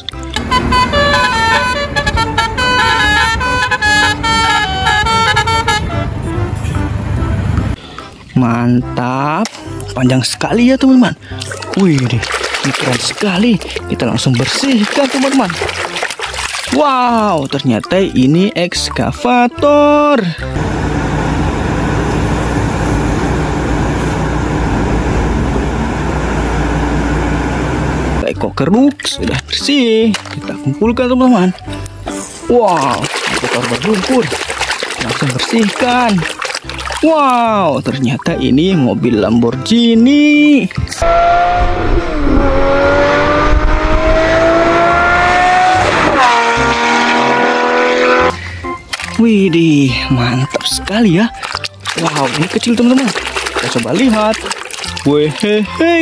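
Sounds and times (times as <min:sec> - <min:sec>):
multi-tone bus horn melody: 0:00.3 - 0:07.8
water spray rushing: 0:11.6 - 0:16.8, 0:32.3 - 0:37.1, 0:51.4 - 0:55.7.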